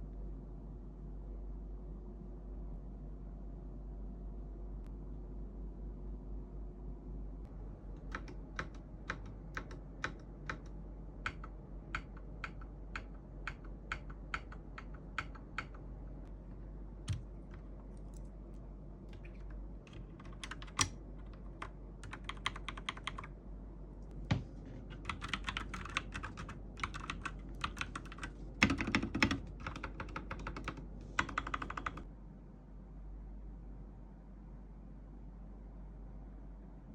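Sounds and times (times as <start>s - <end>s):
mechanical keyboard typing: 8.0s - 15.8s, 17.1s - 18.2s, 19.1s - 23.3s, 24.8s - 32.1s.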